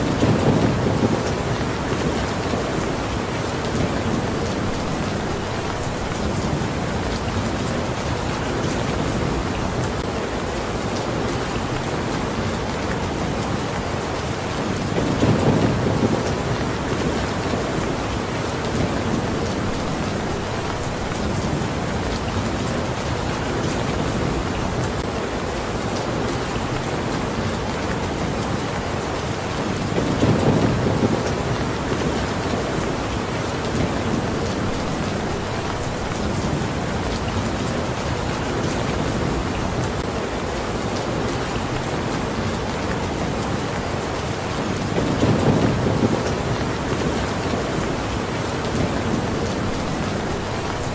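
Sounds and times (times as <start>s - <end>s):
thunder rumbling: 0.0s - 2.8s, 14.9s - 18.0s, 29.9s - 32.9s, 44.8s - 47.8s
steady rain: 0.0s - 50.9s.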